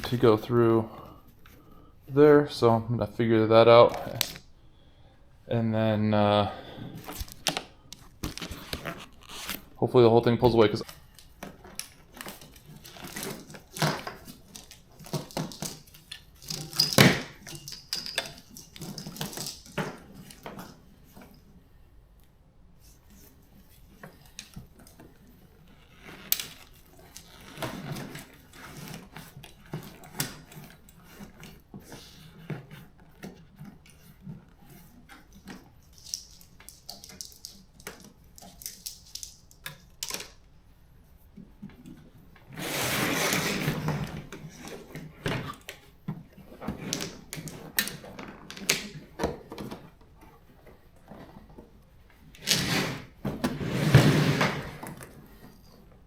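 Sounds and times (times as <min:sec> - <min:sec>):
scraping rustle: 0:06.9 - 0:21.5, 0:41.0 - 0:55.9.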